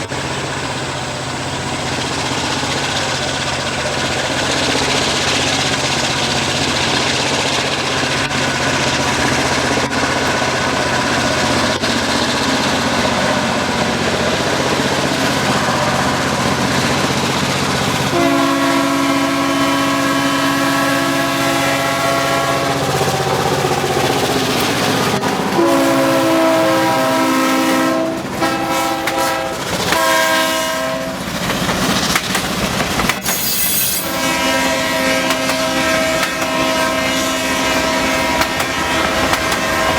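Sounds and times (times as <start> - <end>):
diesel locomotive engine running: 0.0 - 39.9
train horn blasts: 17.9 - 23.1, 25.5 - 31.3, 33.3 - 39.9.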